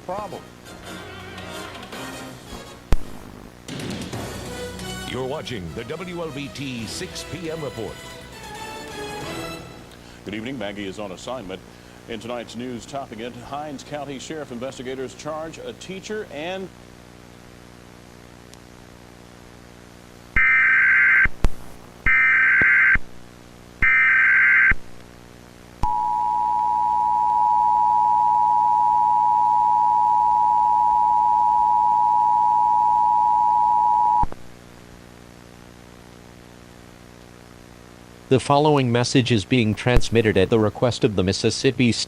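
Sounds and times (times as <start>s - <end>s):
screechy digital data bursts: 23.8s - 24.7s
two-tone attention signal: 25.8s - 34.3s.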